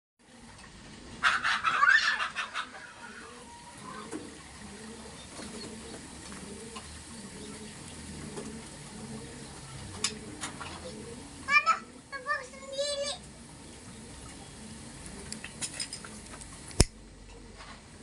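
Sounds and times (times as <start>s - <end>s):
bird squawking harshly: 1.2s - 4.1s.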